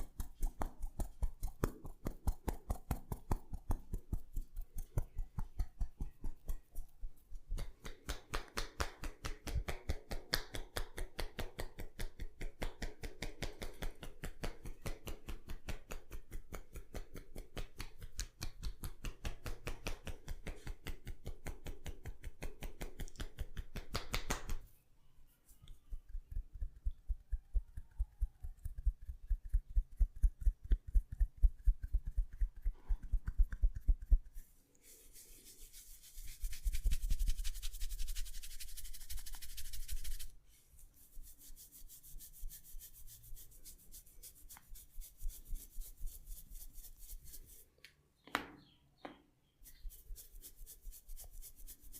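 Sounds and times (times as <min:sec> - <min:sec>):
hands tapping a head: 0:00.0 - 0:24.6.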